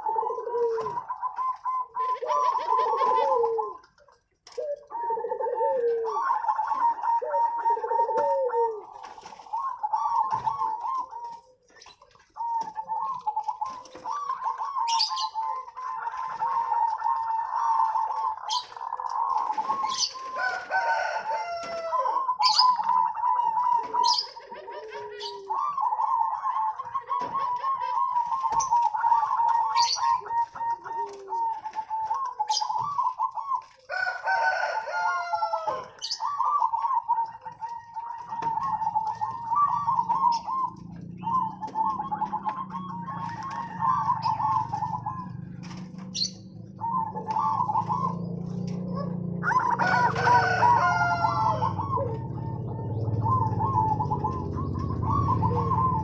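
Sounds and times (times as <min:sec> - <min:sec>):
dove cooing: 0:00.0 - 0:56.0.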